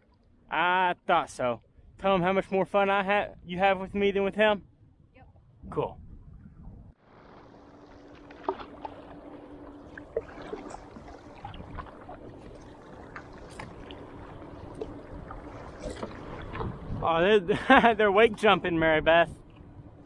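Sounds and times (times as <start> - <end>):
jet ski motor hum: 7.0 - 20.0
water lapping and splashing: 7.0 - 20.0
paddle knocks and drips: 7.8 - 17.0.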